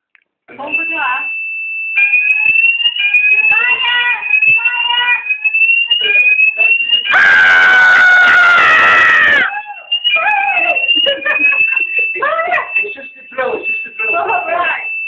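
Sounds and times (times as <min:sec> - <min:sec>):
fire alarm rising tone: 0:00.5 - 0:15.0
loud noisy blast with falling tone: 0:07.1 - 0:09.4.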